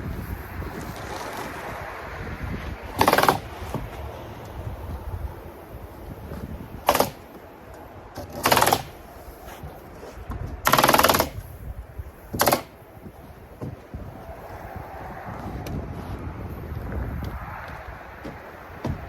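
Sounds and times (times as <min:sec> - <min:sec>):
stapler rapid clacks: 0:03.0 - 0:03.5, 0:06.9 - 0:07.2, 0:08.4 - 0:08.9, 0:10.7 - 0:11.4, 0:12.4 - 0:12.7.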